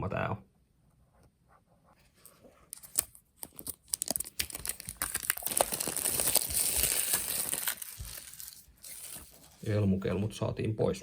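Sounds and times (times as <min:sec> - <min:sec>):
plastic wrap crinkling: 0:02.7 - 0:09.7.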